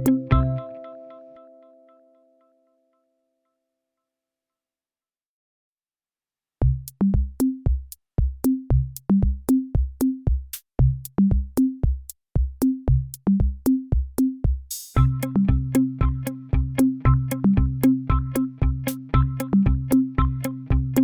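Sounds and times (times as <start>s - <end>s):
electronic beat: 0.0s - 0.7s, 6.6s - 21.0s.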